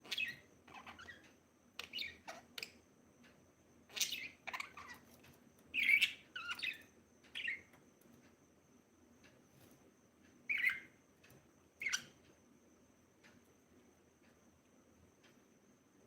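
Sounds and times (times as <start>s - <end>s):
budgerigar chirping: 0.0s - 1.2s, 1.8s - 2.8s, 3.9s - 5.0s, 5.8s - 7.7s, 10.5s - 10.9s, 11.8s - 12.2s.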